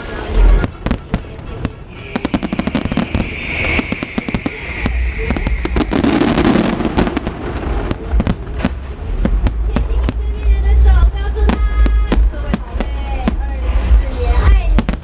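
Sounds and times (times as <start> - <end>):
firework whistle: 0.0 - 8.9
fireworks booming: 0.0 - 15.0
fireworks crackling: 0.0 - 15.0.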